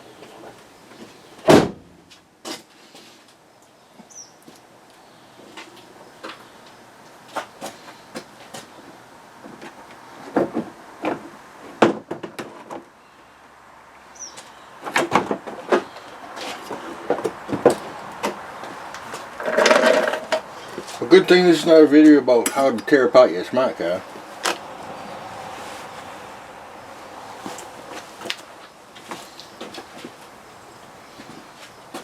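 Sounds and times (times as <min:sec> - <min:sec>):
car parts clicking and rattling: 0:14.8 - 0:21.1
parts clattering: 0:14.9 - 0:21.0.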